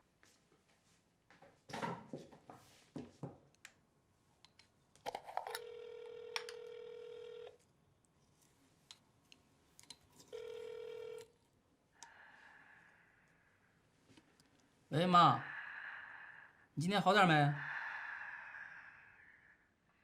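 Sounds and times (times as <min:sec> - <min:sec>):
telephone ringback beep: 0:05.6 - 0:07.6, 0:10.3 - 0:11.2.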